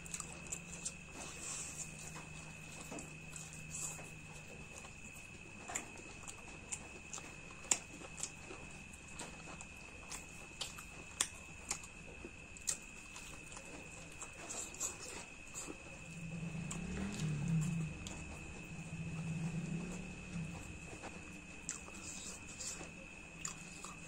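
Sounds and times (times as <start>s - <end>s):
faint high whine: 0.0s - 24.0s
wet chewing mouth clicks: 10.1s - 11.9s
low hum: 15.3s - 24.0s.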